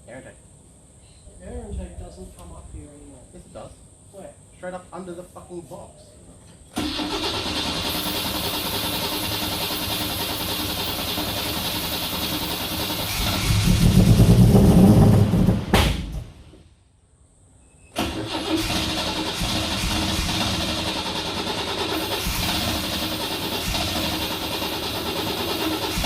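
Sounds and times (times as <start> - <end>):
car engine running roughly: 6.8 - 15.9, 18.0 - 26.0
engine revving: 6.8 - 16.4, 18.0 - 26.0.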